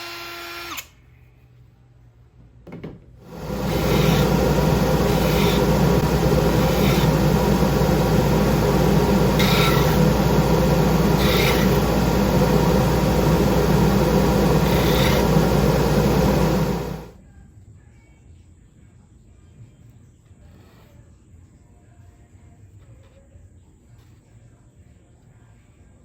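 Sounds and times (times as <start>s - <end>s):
power drill with hole saw cutting wood: 0.0s - 0.9s, 3.3s - 17.1s.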